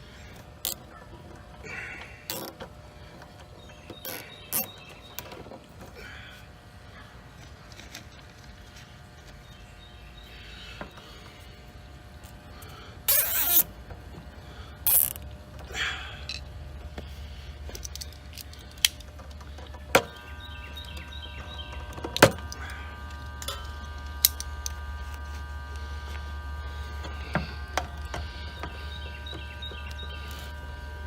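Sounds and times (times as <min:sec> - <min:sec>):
low steady hum: 0:00.0 - 0:31.0
zip ties ratcheting: 0:02.3 - 0:02.6, 0:04.0 - 0:04.7, 0:13.1 - 0:13.7, 0:14.8 - 0:15.2, 0:24.2 - 0:25.2.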